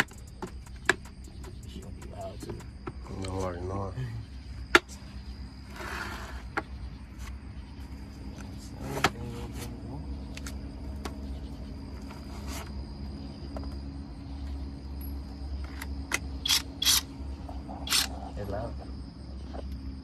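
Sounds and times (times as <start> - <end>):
steady low hum: 0.0 - 20.0
tool clicks and ratcheting: 15.7 - 17.1, 17.9 - 18.1.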